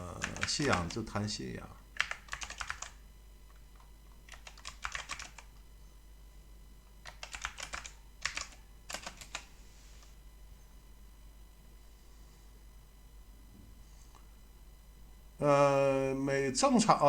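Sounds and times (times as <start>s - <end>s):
keyboard typing: 0.0s - 1.0s, 2.0s - 5.6s, 7.0s - 9.5s.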